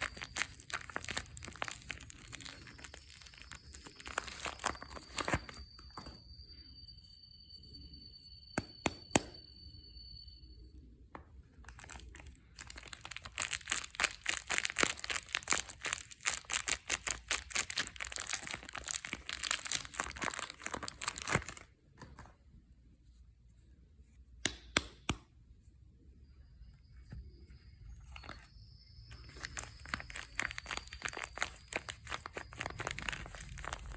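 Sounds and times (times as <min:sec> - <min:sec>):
packaging tearing and crinkling: 0:00.0 - 0:05.9, 0:11.7 - 0:21.7, 0:29.2 - 0:33.9.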